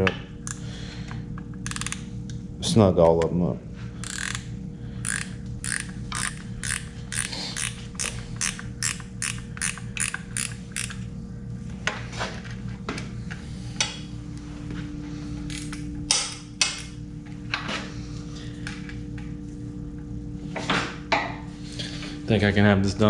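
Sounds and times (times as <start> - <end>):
ratchet wrench clicking: 1.6 - 2.0, 4.0 - 11.0.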